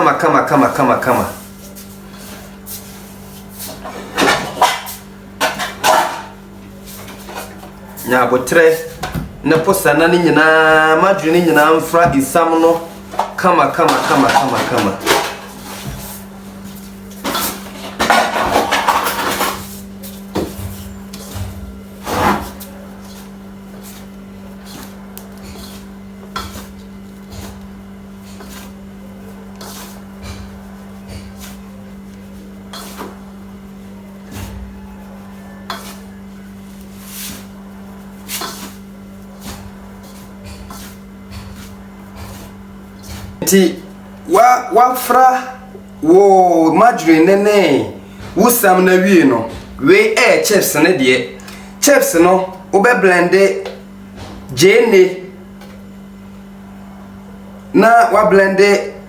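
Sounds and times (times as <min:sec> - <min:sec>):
steady low hum: 0:00.0 - 0:59.0
hands rubbing dough in a bowl: 0:00.7 - 0:03.8, 0:22.4 - 0:43.8.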